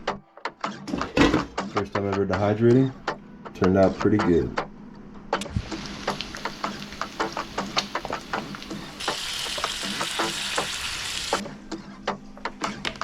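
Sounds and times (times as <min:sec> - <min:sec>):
food frying in a pan: 0:05.6 - 0:11.4
loud steady sizzle: 0:05.6 - 0:11.4.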